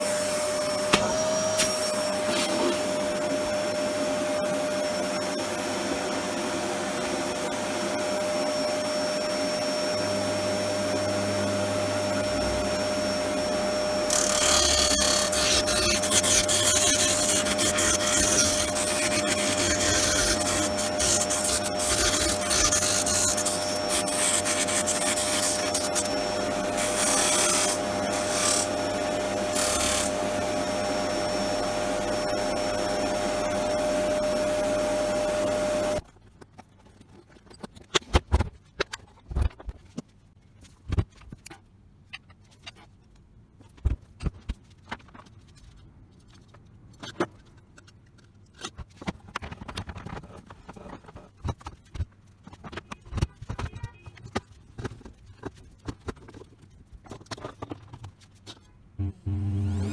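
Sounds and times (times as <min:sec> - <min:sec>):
disc sander motor whining: 0:00.0 - 0:36.0, 0:59.0 - 0:59.9.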